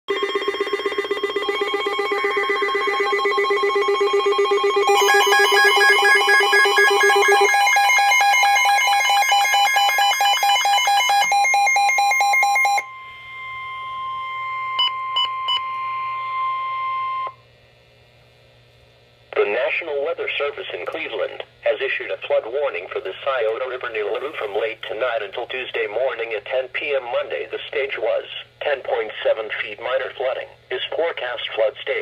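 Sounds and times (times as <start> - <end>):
pulsing electronic alarm tones: 0.1 - 17.4
steady warning alarm tone: 0.1 - 17.4.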